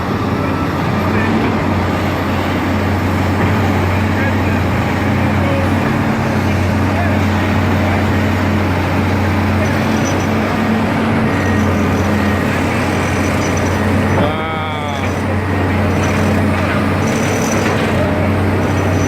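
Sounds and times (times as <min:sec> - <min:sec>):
city street traffic: 0:00.0 - 0:19.0
excavator diesel engines droning: 0:00.0 - 0:19.0.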